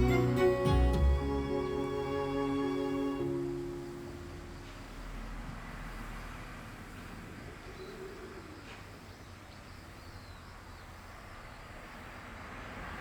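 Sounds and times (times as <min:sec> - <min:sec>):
steady background hiss: 0:00.0 - 0:13.0
faint bird chirps: 0:07.6 - 0:11.6.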